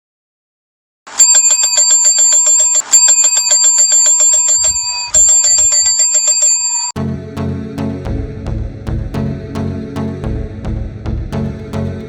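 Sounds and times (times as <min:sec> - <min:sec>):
bell ringing in rapid trill: 0:01.2 - 0:07.0.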